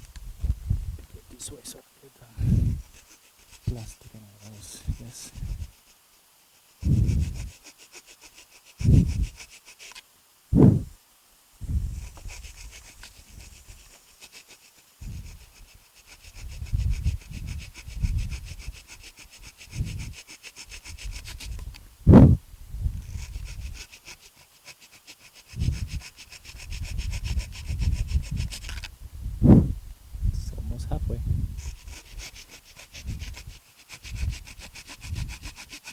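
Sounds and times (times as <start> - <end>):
low thumps and rumbles: 10.6 - 10.9, 29.2 - 29.9
blade scraping plastic: 25.7 - 28.9.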